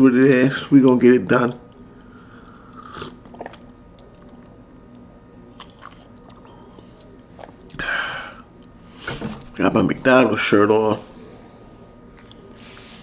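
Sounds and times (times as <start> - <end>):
man chewing: 2.0 - 8.8, 12.0 - 12.9.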